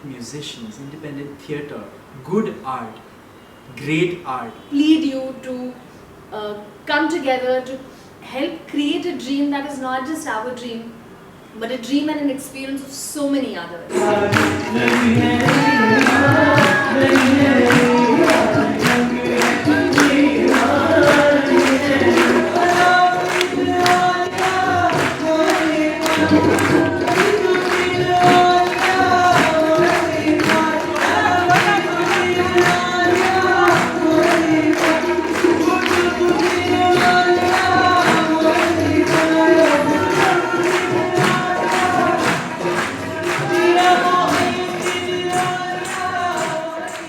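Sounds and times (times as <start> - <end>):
group of voices singing: 13.9 - 47.0
hand percussion beat: 13.9 - 47.0.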